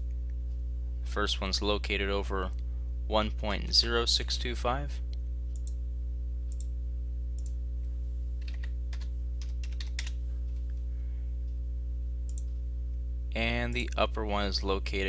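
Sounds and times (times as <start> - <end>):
steady low hum: 0.0 - 15.0
computer keyboard typing: 8.4 - 10.2.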